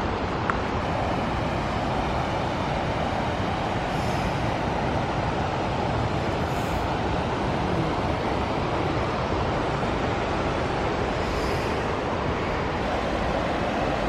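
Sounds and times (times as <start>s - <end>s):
roar of fast-flowing river: 0.0s - 14.0s.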